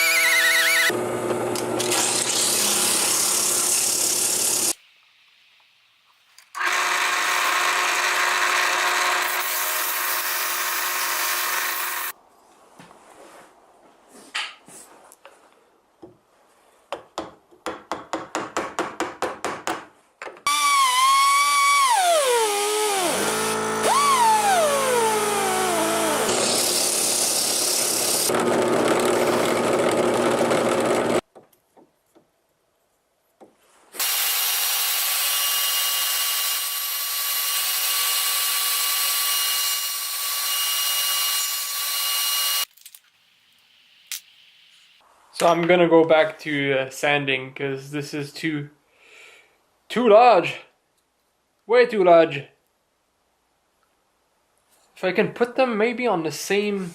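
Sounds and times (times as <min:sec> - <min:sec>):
electric power tool running: 0:00.0 - 0:04.8, 0:06.6 - 0:12.1, 0:20.5 - 0:31.2.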